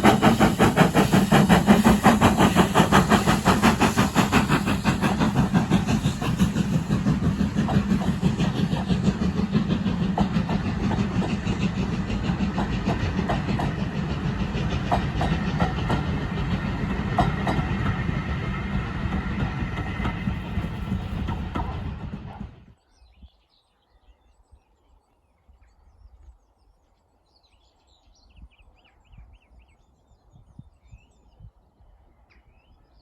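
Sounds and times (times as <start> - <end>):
train rumbling past: 0.0 - 22.8.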